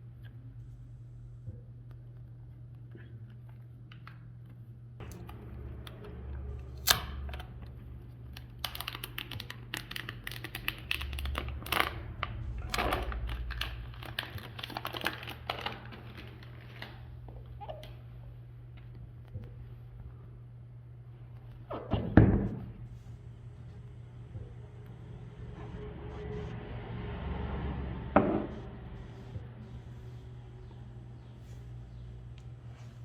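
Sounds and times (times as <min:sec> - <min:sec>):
steady low hum: 0:00.0 - 0:33.0
packaging crinkling: 0:06.8 - 0:18.0.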